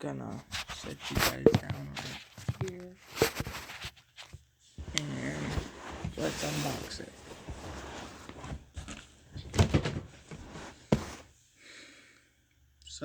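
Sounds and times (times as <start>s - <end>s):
cardboard box rustling: 0.4s - 11.3s
knocks on cardboard box: 1.2s - 1.8s.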